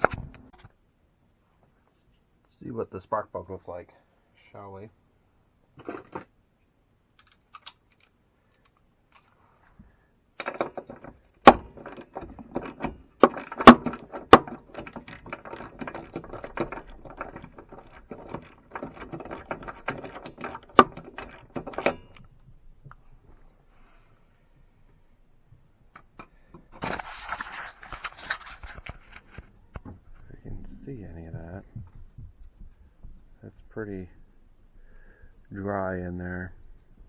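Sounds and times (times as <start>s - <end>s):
sharp knocks: 10.4s - 22.2s
metal hand tools clicking and rattling: 10.4s - 22.4s.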